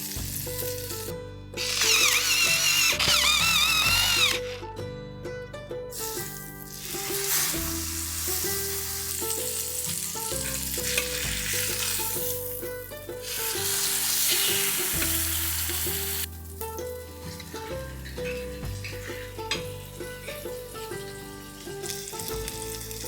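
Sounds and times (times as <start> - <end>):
food sizzling in a pan: 0.0 - 1.1, 5.9 - 23.0
light background music: 0.0 - 23.0.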